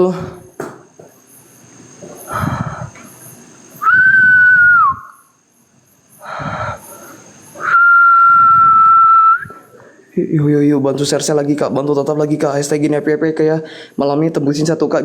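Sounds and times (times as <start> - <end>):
whistled notes: 3.8 - 5.3, 7.6 - 9.6.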